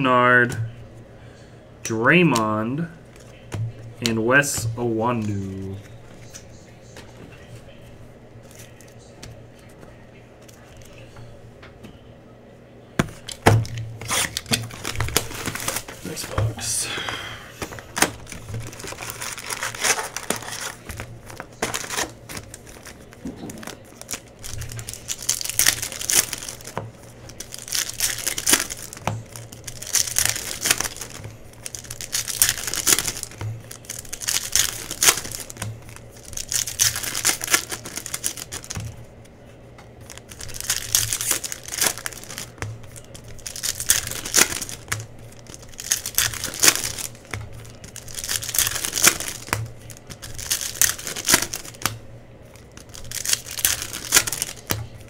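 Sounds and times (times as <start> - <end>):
foil wrappers tearing and crinkling: 13.1 - 39.3, 40.0 - 55.0.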